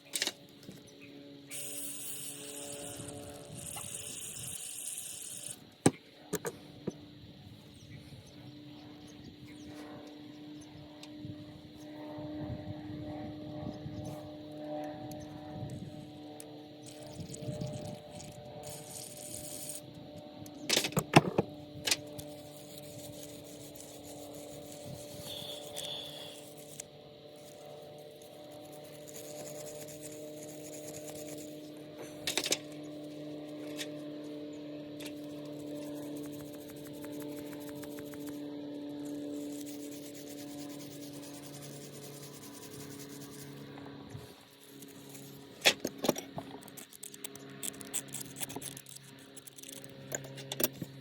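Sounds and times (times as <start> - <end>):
small parts clicking and knocking: 0.0 - 0.8, 1.5 - 6.6, 16.4 - 31.6, 32.2 - 32.9, 44.5 - 51.0
faint steady hum: 0.0 - 51.0
hand rubbing strokes: 35.2 - 45.6.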